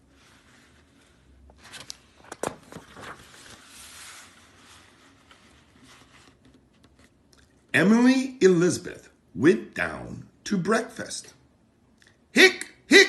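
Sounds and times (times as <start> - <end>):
paper pages rustling: 0.0 - 7.3.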